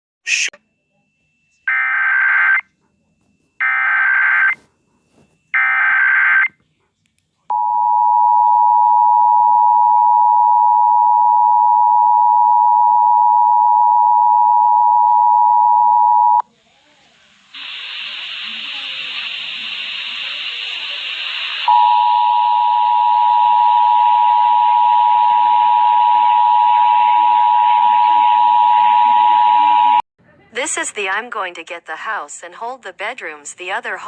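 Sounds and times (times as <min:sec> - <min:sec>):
steady hiss: 0:16.5 - 0:21.7
two-tone attention signal: 0:21.7 - 0:30.0.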